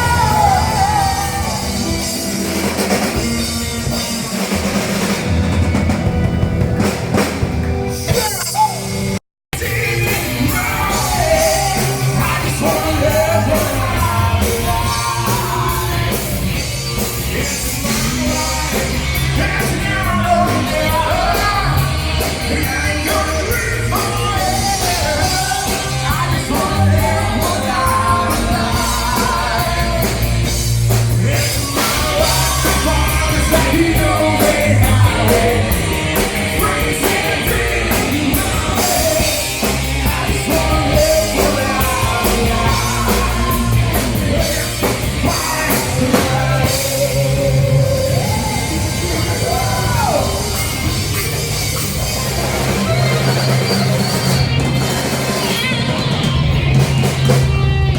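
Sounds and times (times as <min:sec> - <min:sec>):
person singing: 0:00.0 - 0:03.7, 0:08.1 - 0:16.4, 0:17.2 - 0:51.5
heavy bass line: 0:00.0 - 0:57.9
live rock band playing: 0:00.0 - 0:57.9.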